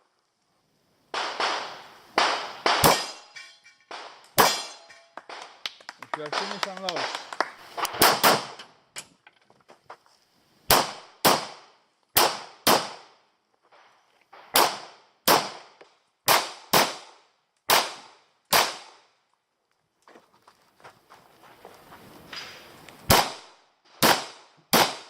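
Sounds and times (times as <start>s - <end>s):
pistol shots: 1.1s - 5.6s, 7.8s - 8.6s, 10.7s - 13.1s, 14.4s - 19.0s, 23.1s - 25.0s.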